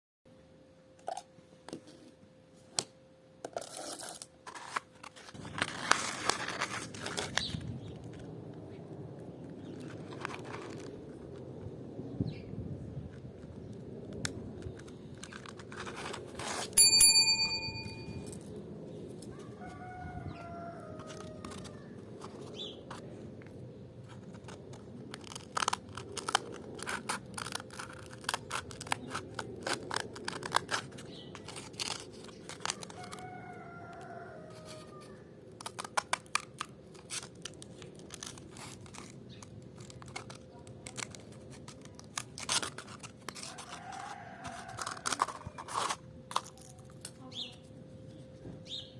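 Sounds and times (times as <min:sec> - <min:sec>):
loud ringing ping: 0:16.8 - 0:18.4
rooster crowing: 0:19.3 - 0:22.0, 0:32.7 - 0:35.4, 0:43.4 - 0:45.7.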